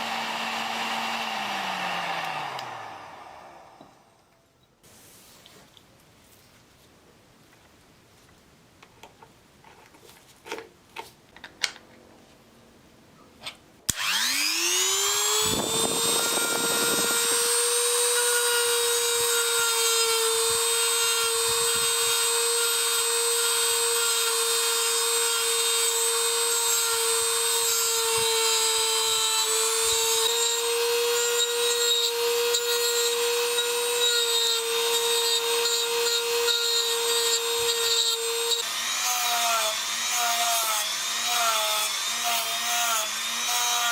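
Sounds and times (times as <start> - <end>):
high-speed power tool whine: 0.0 - 4.2, 13.9 - 43.9.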